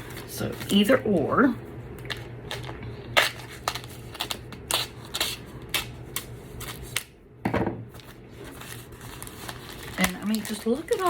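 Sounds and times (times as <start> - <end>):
paper rustle: 7.9 - 11.0.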